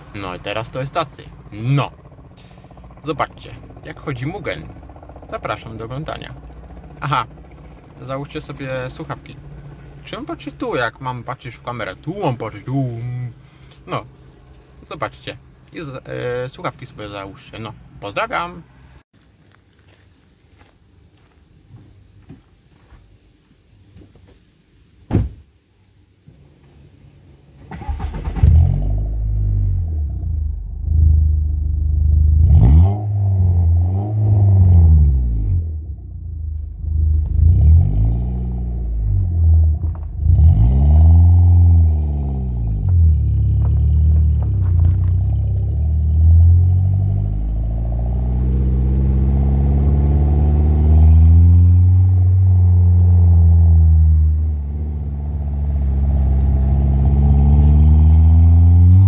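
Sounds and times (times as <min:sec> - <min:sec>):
car engine revving: 0:27.7 - 0:59.0.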